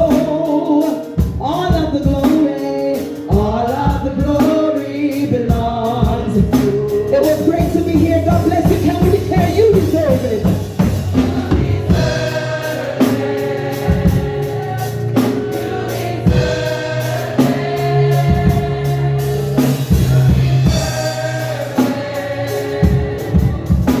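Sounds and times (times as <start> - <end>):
group singing gospel song: 0.0 - 24.0
bass line: 5.6 - 24.0
drum beat: 5.7 - 24.0.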